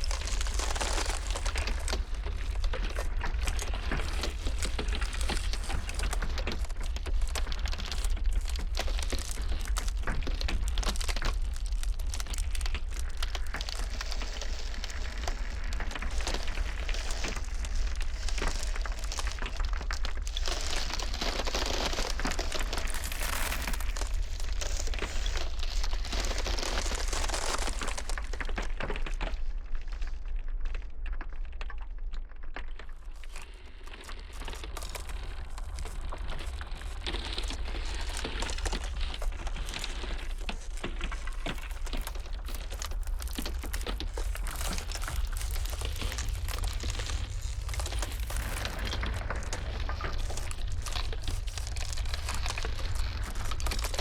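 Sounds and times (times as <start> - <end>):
ice cracking: 0.0 - 54.0
steady low rumble: 41.3 - 54.0.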